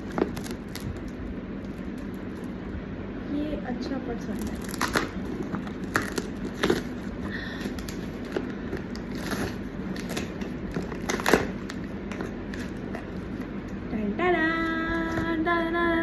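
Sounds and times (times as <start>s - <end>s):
packaging crinkling: 0.0s - 2.6s, 4.2s - 13.8s.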